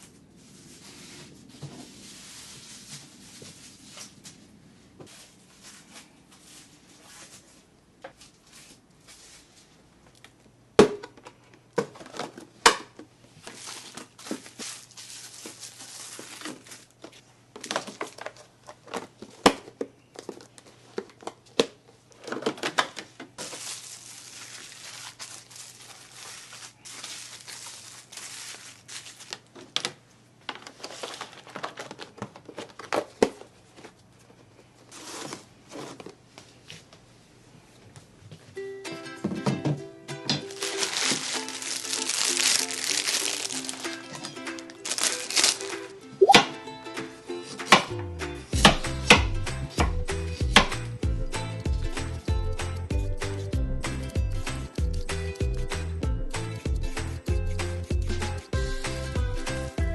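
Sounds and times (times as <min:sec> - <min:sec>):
plastic packaging crinkling: 0:13.4 - 0:19.4, 0:20.2 - 0:34.0, 0:40.4 - 0:46.0.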